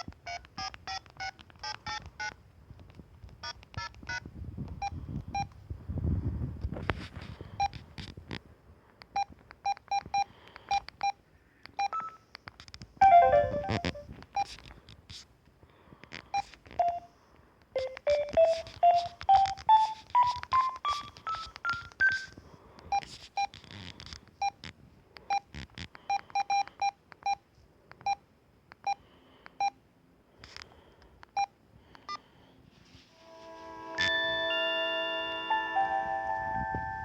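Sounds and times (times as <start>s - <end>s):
phone keypad beeps: 0.0s - 2.4s, 11.8s - 12.2s, 13.0s - 14.5s, 16.4s - 17.1s, 17.8s - 23.5s, 26.1s - 27.4s.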